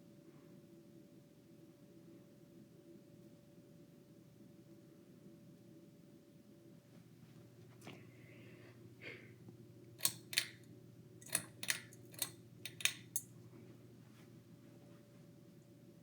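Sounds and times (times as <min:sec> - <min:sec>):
ceiling fan humming: 0:00.0 - 0:16.0
sharp clicks: 0:10.0 - 0:13.3.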